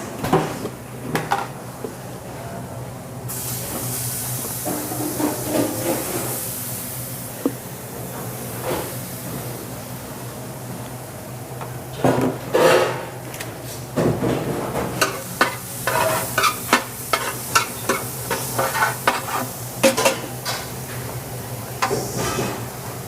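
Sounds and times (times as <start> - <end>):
food sizzling: 15.0 - 20.3.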